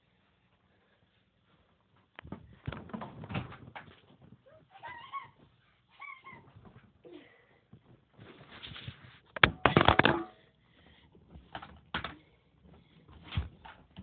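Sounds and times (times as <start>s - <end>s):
puppy whimpering: 4.5s - 5.4s, 6.0s - 6.5s
clattering knocks: 9.4s - 10.3s.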